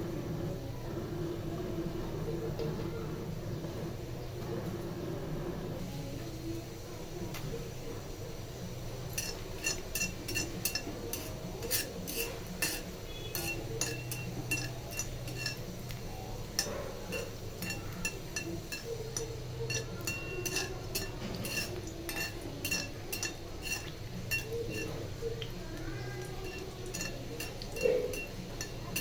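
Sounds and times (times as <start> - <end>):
metal spoon clinking in pot: 9.0 - 25.6, 26.2 - 29.0.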